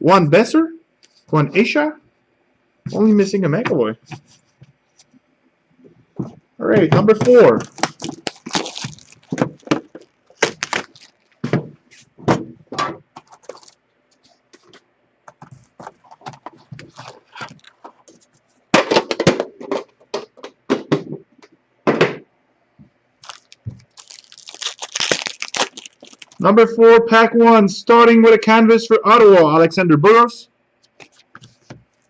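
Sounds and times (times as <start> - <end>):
rustling of card packs: 7.0 - 20.5, 23.2 - 26.4, 30.8 - 32.0.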